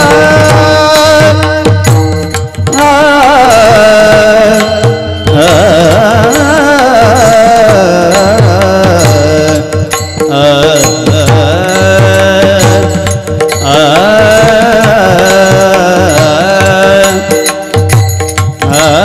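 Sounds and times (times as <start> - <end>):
instrumental accompaniment: 0.0 - 19.0
person singing wordless melody: 0.0 - 19.0
rhythmic drum strokes: 0.0 - 19.0.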